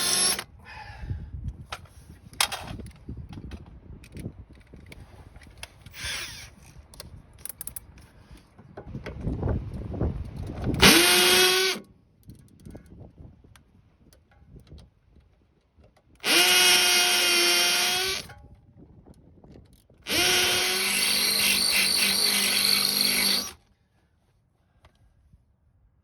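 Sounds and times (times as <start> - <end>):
power drill motor whine: 0.0 - 0.5, 6.0 - 6.6, 10.8 - 11.8, 16.2 - 18.3, 20.1 - 23.6.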